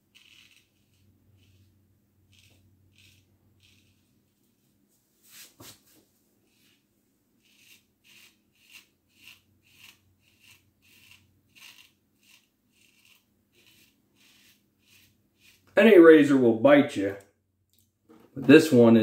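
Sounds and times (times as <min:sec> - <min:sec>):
razor scraping stubble: 0:00.0 - 0:01.7, 0:02.3 - 0:04.1, 0:07.4 - 0:15.8.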